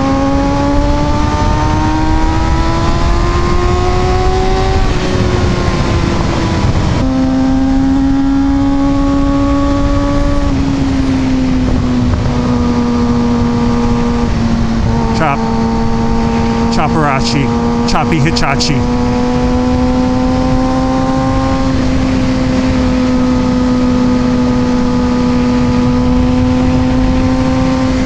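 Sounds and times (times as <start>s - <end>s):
motorcycle engine revving: 12.4s - 16.7s.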